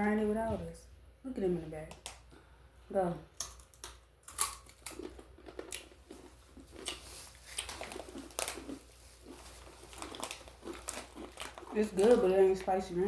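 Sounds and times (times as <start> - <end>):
people chewing crunchy pretzels: 3.4 - 12.9.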